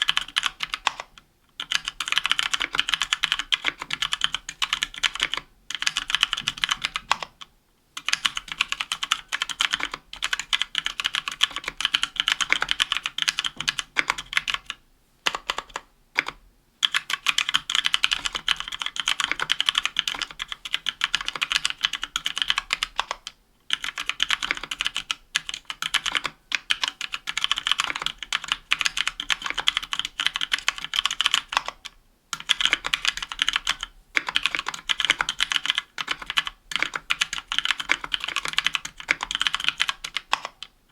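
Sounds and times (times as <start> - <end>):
fast typing on mechanical keyboard: 0.0 - 7.4, 8.0 - 40.7.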